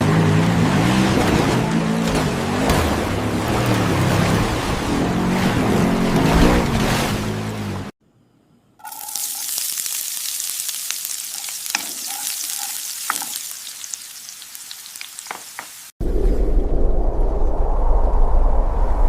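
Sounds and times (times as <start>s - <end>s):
food sizzling in a hot pan: 8.8s - 15.9s.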